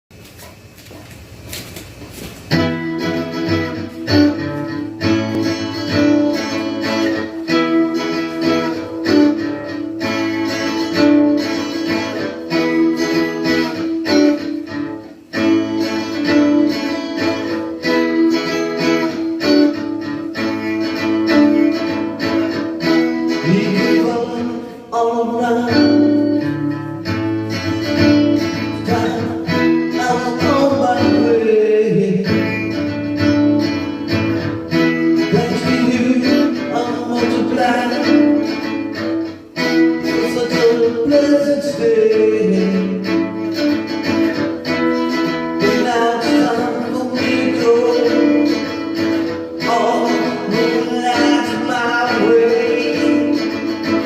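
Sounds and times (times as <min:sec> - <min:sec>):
guitar playing: 0:02.0 - 0:54.0
person singing: 0:15.4 - 0:26.9, 0:27.5 - 0:54.0.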